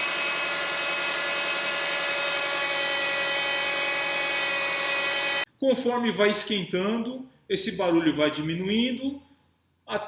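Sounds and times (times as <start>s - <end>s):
power steering pump whine: 0.0s - 5.5s.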